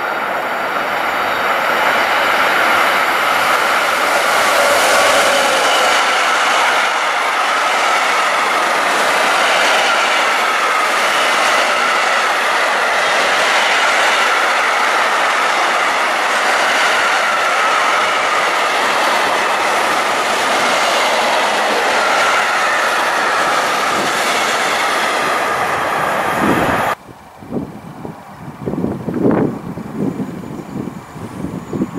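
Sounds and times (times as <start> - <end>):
freight train wheels on rails: 0.0 - 31.9.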